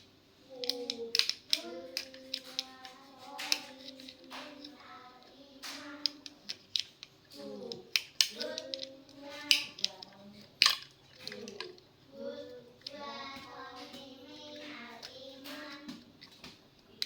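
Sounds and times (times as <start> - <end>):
tools clicking and clacking: 0.0 - 4.8, 5.6 - 11.8
person talking or singing: 0.5 - 6.3, 7.4 - 10.5, 11.2 - 16.0.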